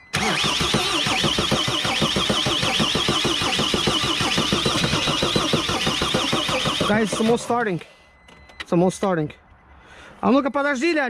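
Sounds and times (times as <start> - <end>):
diesel engine cranking: 0.0 - 7.9
starter motor whine: 0.1 - 7.5.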